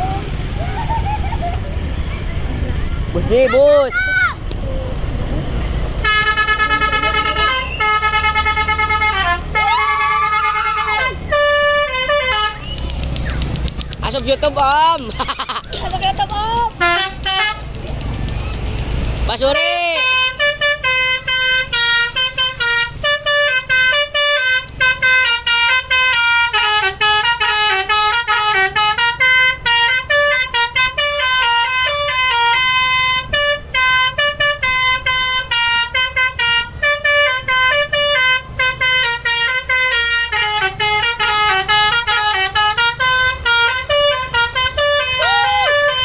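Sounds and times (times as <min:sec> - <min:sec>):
bus musical air horn melody: 0:05.9 - 0:12.9, 0:16.8 - 0:17.8, 0:19.4 - 0:46.0.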